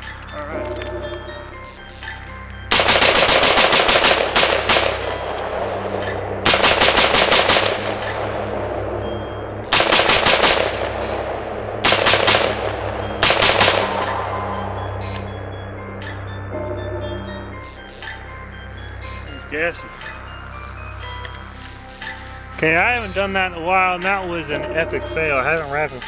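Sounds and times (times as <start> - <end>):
gunshot echo: 2.7 - 8.6, 9.7 - 15.3
rifle shots: 2.7 - 8.6, 9.7 - 14.4.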